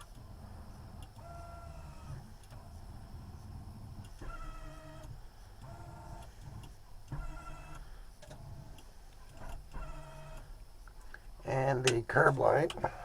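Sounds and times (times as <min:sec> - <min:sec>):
low vehicle hum: 0:00.0 - 0:13.0.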